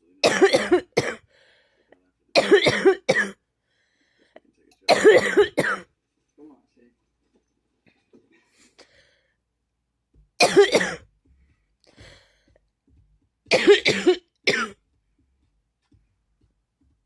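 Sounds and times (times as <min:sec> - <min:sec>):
person coughing: 0:00.2 - 0:01.2, 0:02.4 - 0:03.4, 0:04.9 - 0:05.9, 0:10.4 - 0:11.0, 0:13.5 - 0:14.8.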